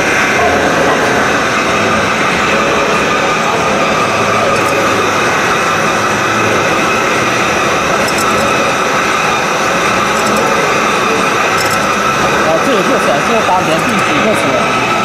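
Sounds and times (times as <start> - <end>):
grinding machine humming and hissing: 0.0 - 15.0.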